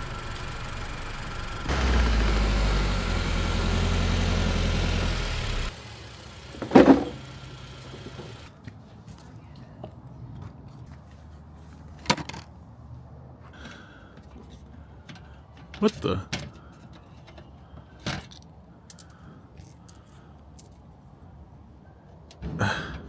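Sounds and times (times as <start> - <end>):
thud: 6.6 - 7.3.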